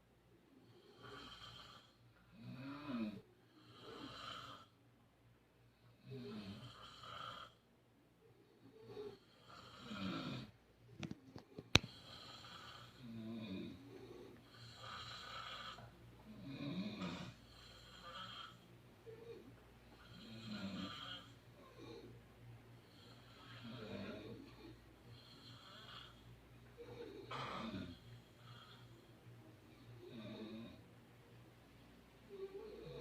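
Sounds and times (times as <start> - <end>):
people snoring: 0.6 - 4.8, 5.9 - 7.6, 8.6 - 10.6, 11.7 - 22.2, 22.8 - 29.2, 29.8 - 30.8, 32.3 - 33.0.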